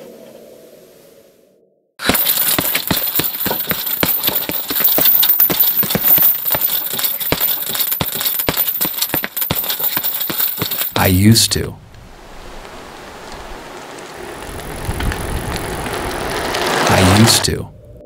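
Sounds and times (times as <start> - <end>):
rapid clicking and rattling: 2.0 - 11.0.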